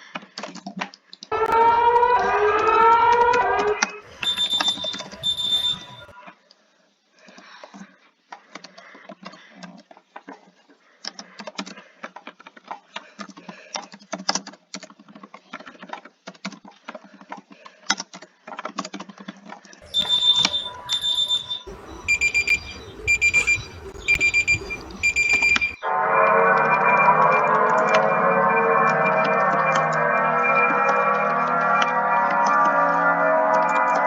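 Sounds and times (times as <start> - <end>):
electronic alarm beeping: 1.4 - 6.2, 19.8 - 34.0.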